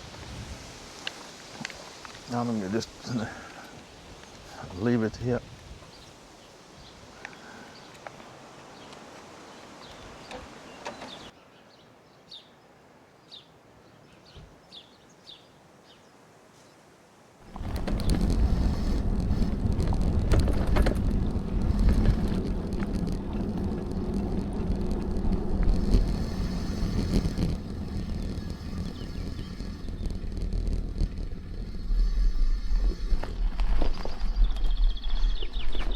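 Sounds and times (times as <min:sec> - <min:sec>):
bicycle rattling clicks: 0:17.4 - 0:32.4
wind buffeting microphone: 0:17.4 - 0:35.9
bird chirps: 0:26.1 - 0:30.4, 0:34.2 - 0:35.9.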